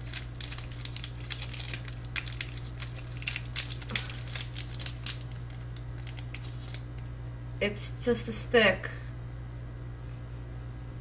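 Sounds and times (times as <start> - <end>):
candy wrapper crinkling: 0.0 - 7.1
low electrical hum: 0.0 - 11.0.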